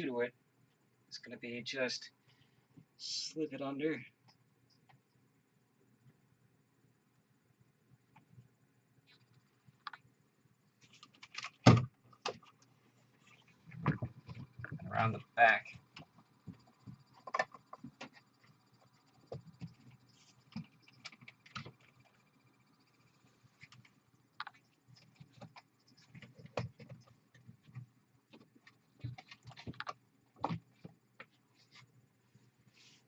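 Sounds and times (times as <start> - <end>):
cable tapping and rustling: 10.8 - 22.4, 23.5 - 31.9.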